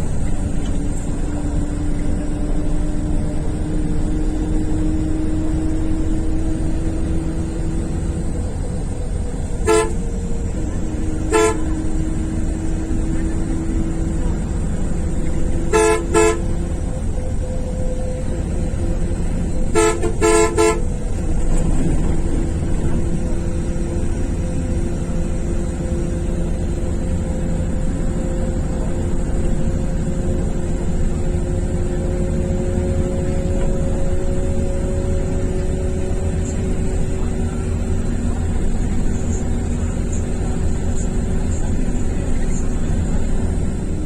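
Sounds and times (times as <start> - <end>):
horn tooting: 9.4 - 12.8, 15.2 - 16.8, 19.6 - 21.3.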